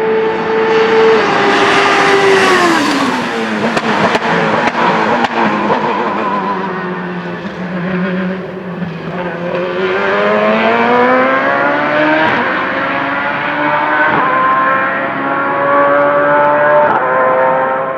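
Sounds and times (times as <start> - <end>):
race car engine accelerating: 0.0 - 17.9
gear upshifts: 0.4 - 15.1.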